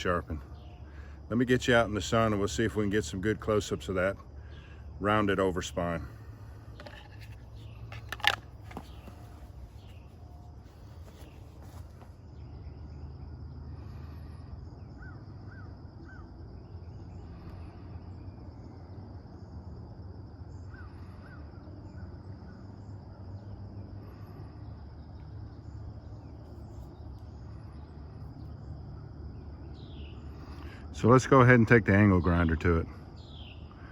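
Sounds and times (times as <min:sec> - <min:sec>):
bird calls: 0:04.4 - 0:13.1, 0:13.8 - 0:18.8, 0:20.5 - 0:31.2, 0:31.9 - 0:33.9.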